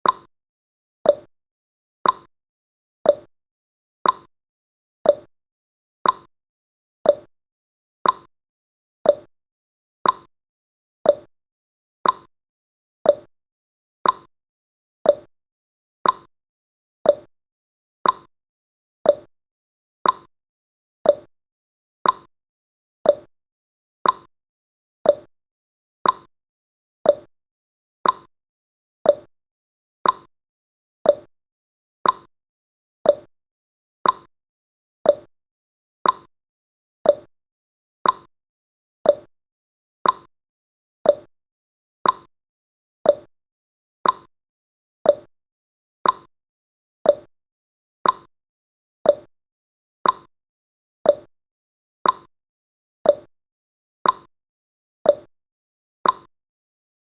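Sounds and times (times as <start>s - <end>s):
clock ticking: 34.0s - 34.3s, 40.0s - 40.3s, 42.0s - 42.3s, 44.0s - 44.3s, 56.0s - 56.3s.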